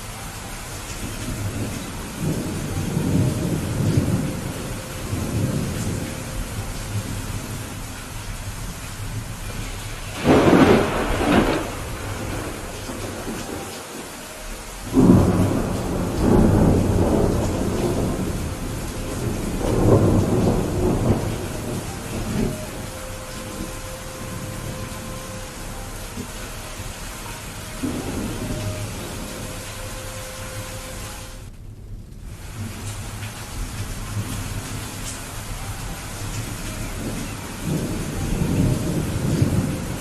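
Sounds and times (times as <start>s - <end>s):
steady rain: 0.0s - 40.0s
thunder rumbling: 0.0s - 40.0s
loud thunderclap: 10.1s - 13.7s, 14.9s - 25.1s, 27.8s - 29.4s.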